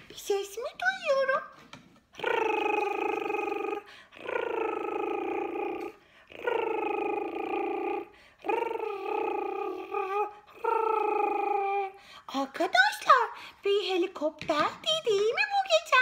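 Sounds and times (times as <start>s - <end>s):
voice making rolled trill: 2.2s - 11.9s.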